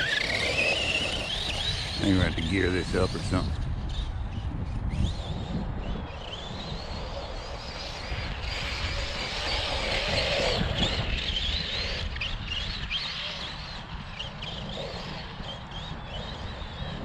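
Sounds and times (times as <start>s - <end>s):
electric motor whining: 0.0s - 4.1s.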